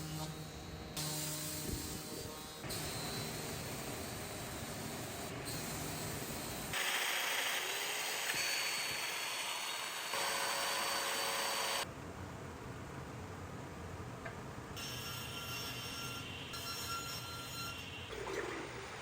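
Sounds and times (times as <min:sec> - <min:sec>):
woodworking power tools cutting: 0:06.6 - 0:11.8.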